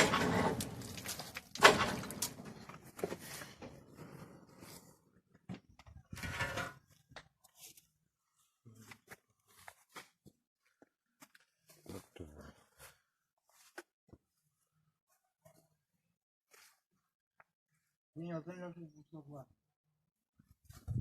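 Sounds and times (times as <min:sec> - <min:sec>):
hard objects knocking and scraping: 0:00.0 - 0:03.7.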